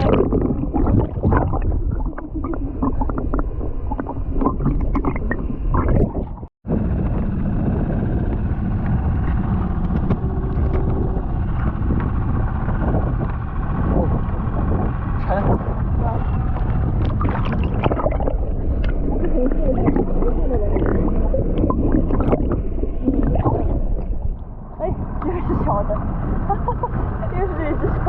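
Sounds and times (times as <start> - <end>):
water rushing around boat: 0.0 - 28.0
wind rushing: 0.0 - 28.0.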